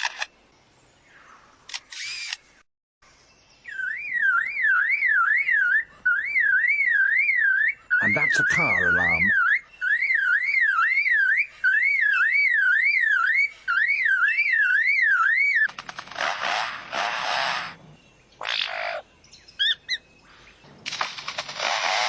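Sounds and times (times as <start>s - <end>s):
bird mimicking car alarm: 3.7s - 15.7s
bird clicks and harsh bursts: 15.5s - 17.8s, 20.8s - 22.0s.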